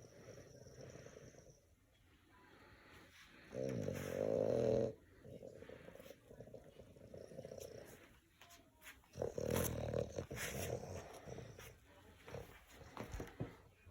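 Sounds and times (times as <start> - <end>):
dog snoring: 0.0 - 1.6, 3.5 - 7.9, 9.1 - 11.6.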